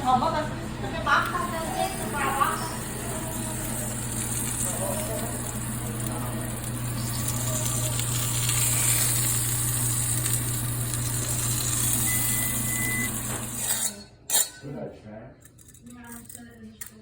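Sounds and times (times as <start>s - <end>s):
steady sizzling hiss: 0.1s - 13.3s
short high beep: 12.0s - 13.2s.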